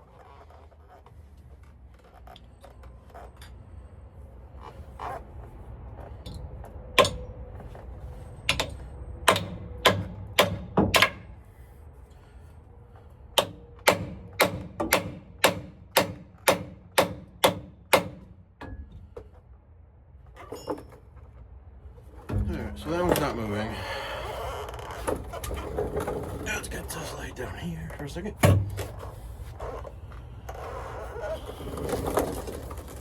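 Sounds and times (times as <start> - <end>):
hammer striking steel: 8.5 - 11.3, 13.4 - 19.0.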